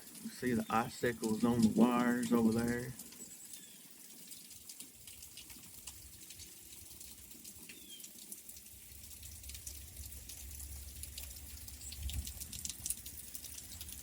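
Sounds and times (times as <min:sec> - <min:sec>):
ice and water dripping: 0:00.0 - 0:14.0.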